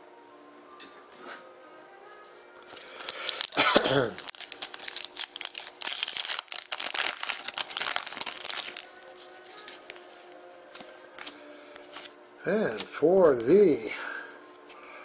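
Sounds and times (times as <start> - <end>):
foil wrapper tearing: 2.7 - 9.1
foil wrapper crinkling: 2.7 - 10.0.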